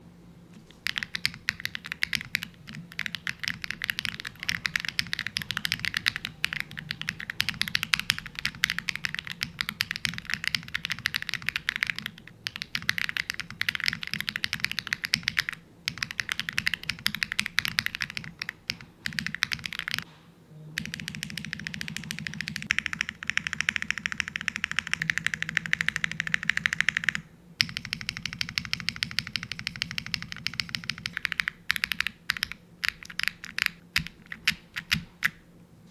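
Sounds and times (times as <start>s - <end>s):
mechanical keyboard typing: 0.7s - 20.1s, 20.8s - 35.4s.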